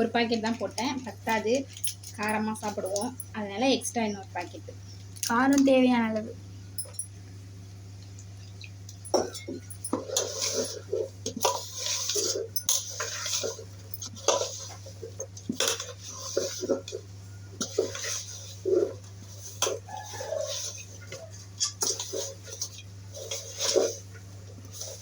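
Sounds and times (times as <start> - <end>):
fish mixing in a bowl: 8.2 - 25.0.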